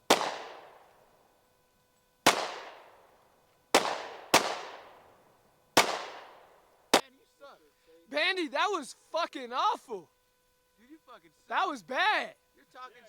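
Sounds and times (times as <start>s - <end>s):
handgun shots with echo: 0.1s - 0.9s, 2.3s - 3.0s, 3.8s - 5.0s, 5.8s - 6.5s.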